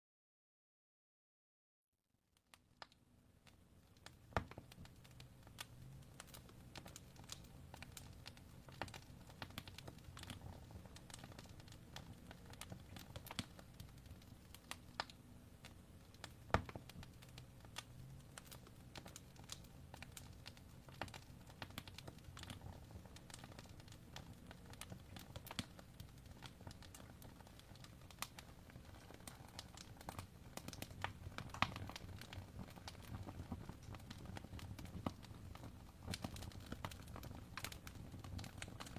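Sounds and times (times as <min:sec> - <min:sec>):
wood fire crackling and popping: 0:02.4 - 0:38.9
low rumble of flames: 0:03.4 - 0:38.9.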